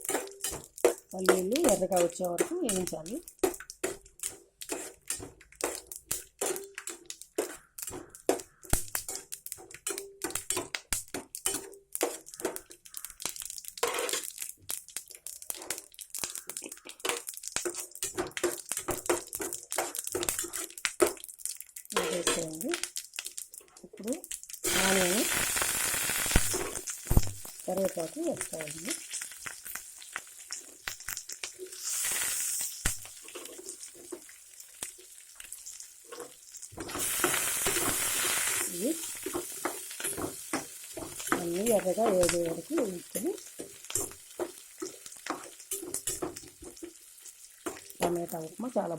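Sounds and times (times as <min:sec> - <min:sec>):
scraping and clinking in a pan: 0:00.0 - 0:14.5, 0:15.4 - 0:21.2, 0:21.9 - 0:22.9, 0:31.5 - 0:34.3, 0:36.0 - 0:48.1
seeds crackling in hot oil: 0:00.0 - 0:48.9
loud sizzling hiss: 0:24.6 - 0:27.8, 0:31.7 - 0:33.0, 0:36.8 - 0:39.0.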